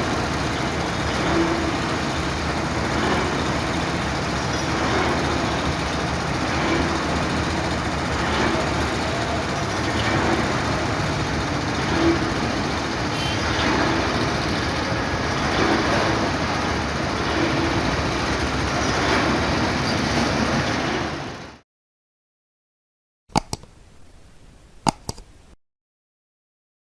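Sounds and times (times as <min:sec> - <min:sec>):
engine running steadily: 0:00.0 - 0:21.6.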